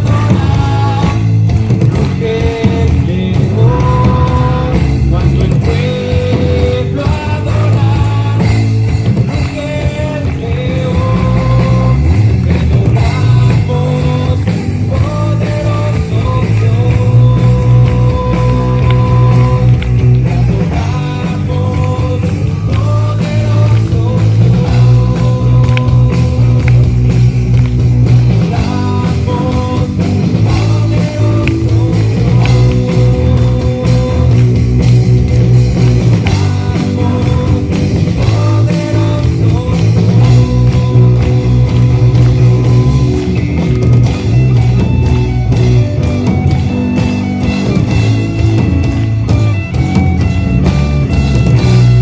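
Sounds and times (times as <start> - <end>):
worship band playing: 0.0 - 52.0.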